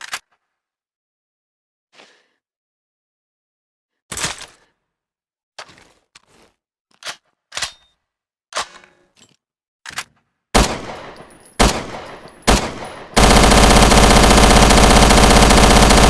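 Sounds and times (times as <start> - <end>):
full-automatic gunfire: 10.6 - 16.0
gunshots with echo: 10.6 - 16.0.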